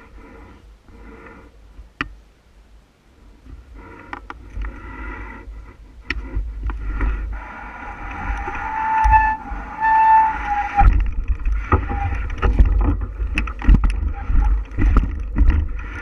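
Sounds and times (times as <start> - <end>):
steady whine: 3.8 - 16.0
wind buffeting microphone: 4.5 - 16.0
bike rattling: 6.2 - 16.0.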